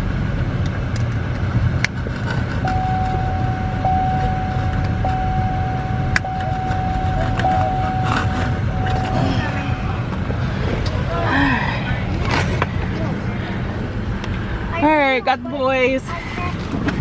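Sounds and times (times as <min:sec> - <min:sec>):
low road rumble: 0:00.0 - 0:17.0
electronic warning tone: 0:02.6 - 0:10.0.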